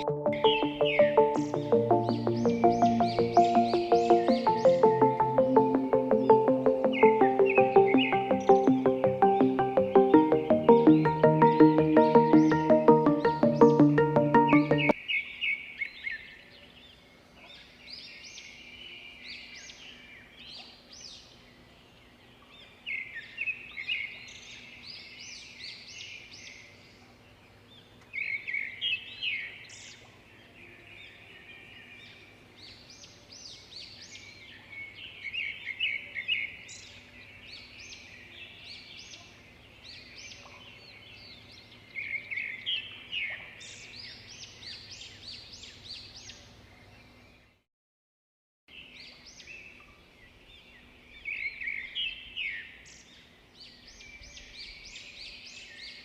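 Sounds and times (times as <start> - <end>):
birds chirping and trilling: 0.0 - 17.0.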